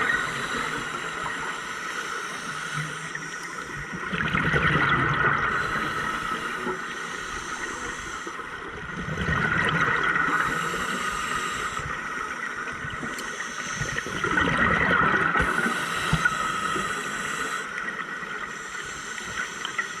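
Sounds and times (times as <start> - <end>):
regulator bubbles gurgling underwater: 0.0 - 20.0
hiss of air: 5.5 - 8.5, 10.4 - 12.3, 15.4 - 17.8.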